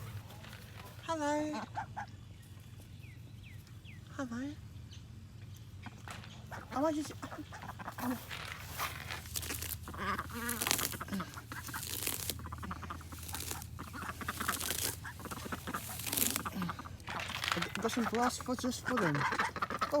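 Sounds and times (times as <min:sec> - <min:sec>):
rustling: 0:00.0 - 0:01.2, 0:06.1 - 0:20.0
poultry calling: 0:00.0 - 0:02.6, 0:05.9 - 0:20.0.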